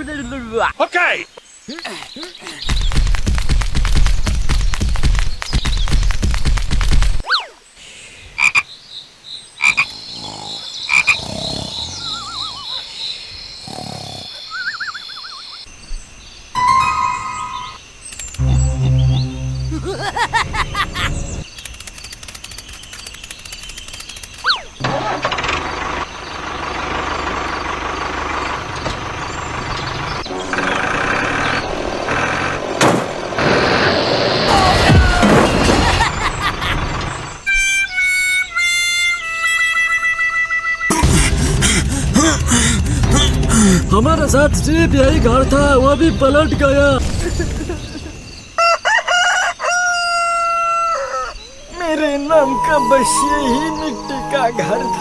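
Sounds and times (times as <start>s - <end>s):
low croaking animal calls: 9.6s - 15.7s, 26.5s - 33.8s
wavering whistles: 16.6s - 17.8s, 51.2s - 55.0s
pulsing high trill: 18.4s - 21.4s, 52.4s - 55.0s
heavy vehicle engine running: 24.9s - 34.0s, 36.1s - 37.4s, 41.0s - 46.5s.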